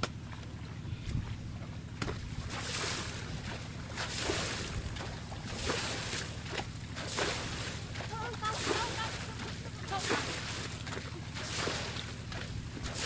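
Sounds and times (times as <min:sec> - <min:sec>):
low engine hum: 0:00.0 - 0:13.0
water sloshing: 0:00.0 - 0:13.0.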